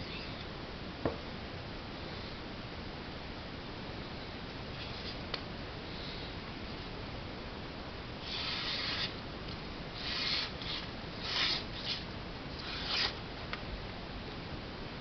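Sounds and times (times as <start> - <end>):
knife edge rasping strokes: 8.2 - 9.2, 10.0 - 13.2.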